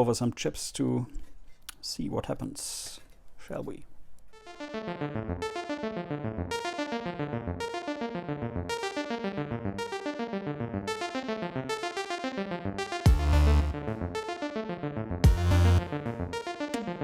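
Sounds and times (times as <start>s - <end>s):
electric piano synthesizer pattern: 4.4s - 17.0s.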